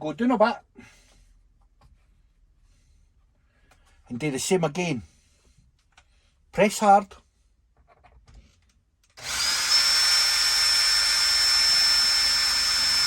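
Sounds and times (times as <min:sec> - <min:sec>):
electric drill whining: 0:09.2 - 0:13.0.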